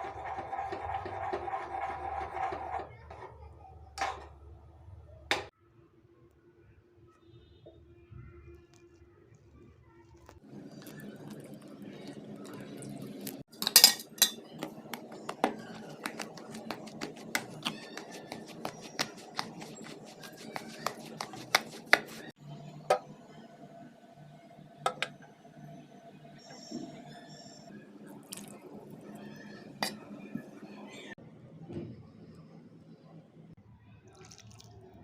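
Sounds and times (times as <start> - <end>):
metal utensil clinking on cookware: 13.5 - 22.3, 29.8 - 30.2.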